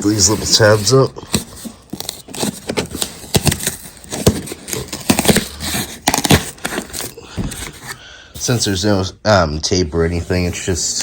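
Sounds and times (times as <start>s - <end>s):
cardboard box tabs crackling: 0.1s - 8.0s.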